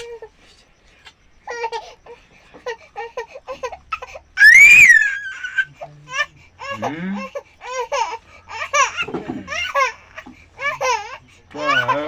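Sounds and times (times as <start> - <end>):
girl squealing shrilly: 4.4 - 5.6.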